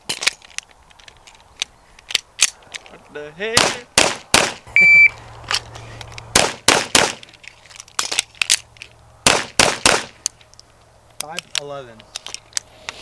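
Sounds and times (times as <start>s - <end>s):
gunshots: 3.6s - 4.6s, 6.3s - 7.2s, 9.2s - 10.2s.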